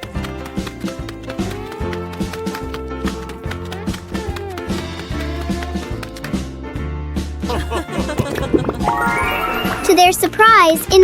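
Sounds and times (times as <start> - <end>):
sliding high tones: 8.8 - 10.2.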